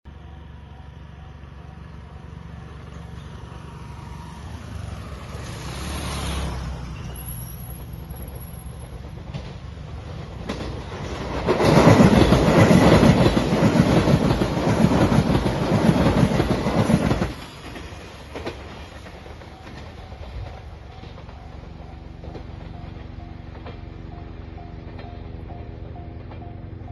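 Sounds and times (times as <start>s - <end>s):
train rumble: 0.1s - 26.9s
wheels clattering over rails: 5.6s - 26.9s.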